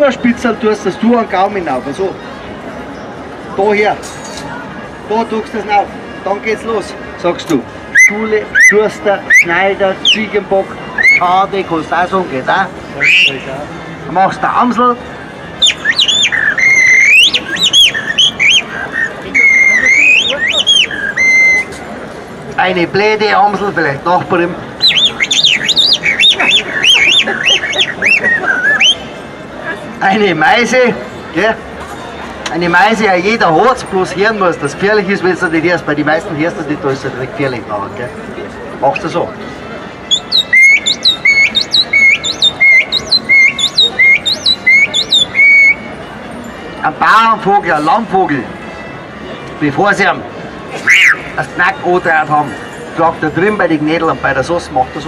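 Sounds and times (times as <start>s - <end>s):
bird-call whistle warbling: 7.9s - 10.3s, 11.0s - 11.3s, 13.0s - 13.5s, 15.6s - 21.7s, 24.8s - 29.1s, 40.0s - 45.9s, 50.8s - 51.3s.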